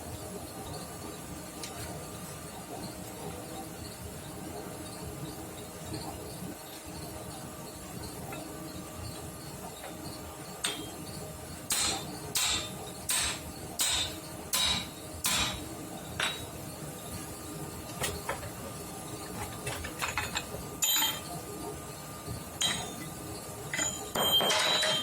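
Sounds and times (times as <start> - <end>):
hammer striking steel: 10.6 - 11.0, 11.7 - 16.5, 22.6 - 23.0.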